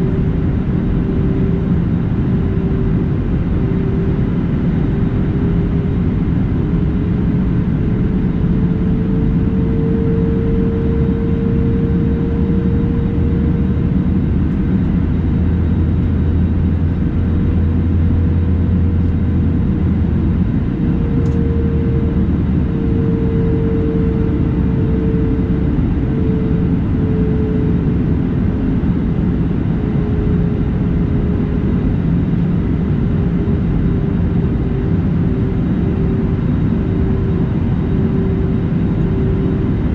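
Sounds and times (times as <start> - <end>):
low rumble of engines and airflow: 0.0 - 39.9
mid-pitched wavering hum: 0.0 - 39.9.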